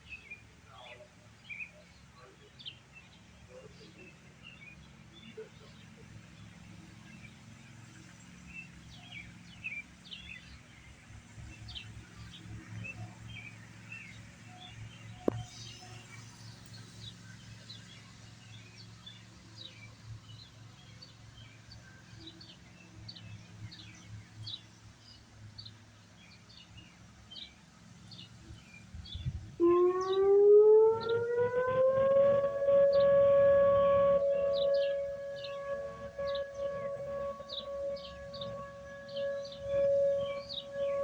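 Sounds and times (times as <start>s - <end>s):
low outdoor rumble: 0.0s - 41.0s
small birds chirping: 32.1s - 41.0s.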